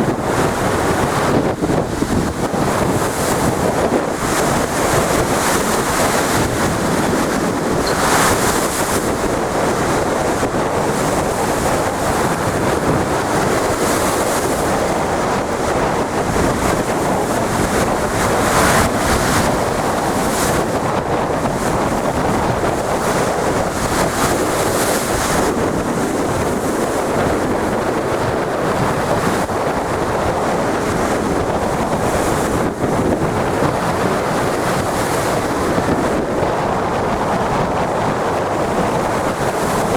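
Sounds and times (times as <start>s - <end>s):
ocean waves breaking: 0.0s - 20.9s
wind buffeting microphone: 0.0s - 39.9s.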